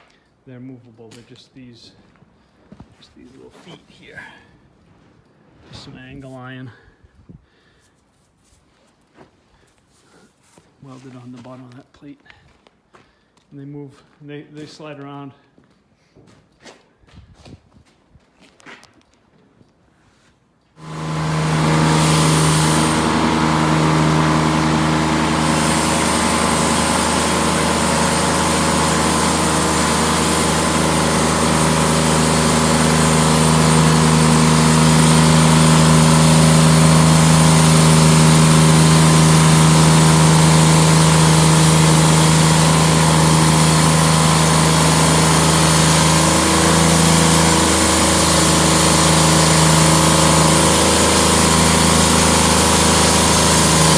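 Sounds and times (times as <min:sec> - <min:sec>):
sawmill engine drone: 0:20.8 - 0:53.9.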